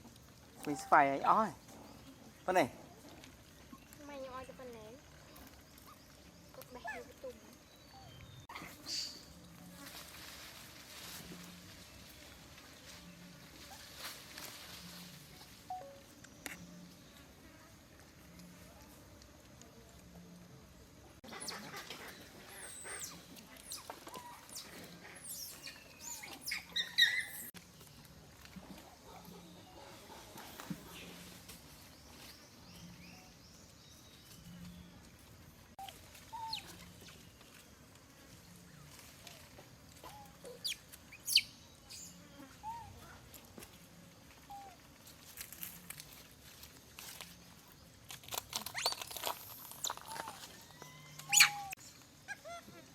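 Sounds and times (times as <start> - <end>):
small animals squeaking and chirping: 0.6 - 9.4, 21.2 - 27.6, 35.8 - 37.3, 40.0 - 43.3, 48.5 - 52.9
monkeys squeaky calls: 21.3 - 27.5, 36.3 - 36.9, 49.7 - 52.9.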